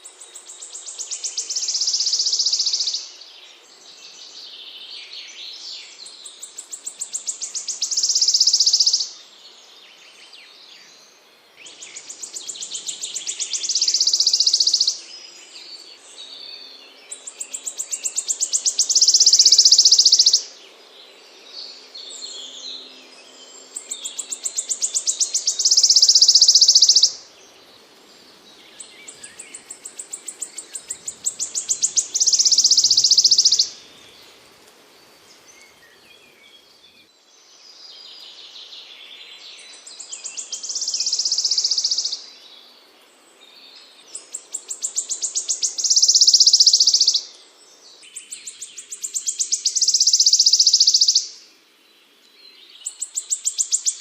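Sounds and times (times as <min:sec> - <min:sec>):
soft bird twittering: 0:00.0 - 0:03.2, 0:03.8 - 0:09.2, 0:11.6 - 0:20.5, 0:22.0 - 0:34.4, 0:35.2 - 0:42.7, 0:43.4 - 0:51.4, 0:52.4 - 0:54.0
songbird buzzing trill: 0:00.0 - 0:03.2, 0:04.0 - 0:09.3, 0:11.7 - 0:20.6, 0:21.5 - 0:34.5, 0:38.0 - 0:42.5, 0:43.6 - 0:47.3, 0:48.1 - 0:51.5.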